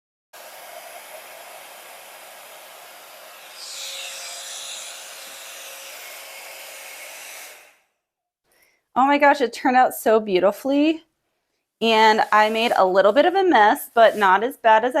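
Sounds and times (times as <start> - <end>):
hair dryer blowing: 0.4 - 7.8, 11.8 - 14.4.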